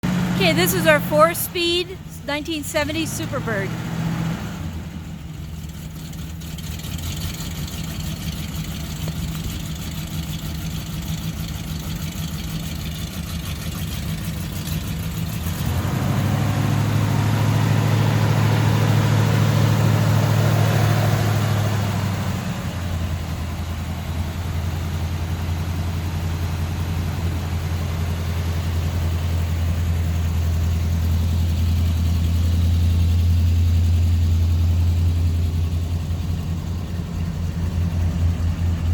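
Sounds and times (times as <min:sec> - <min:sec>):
car engine idling and revving: 0:00.0 - 0:38.9.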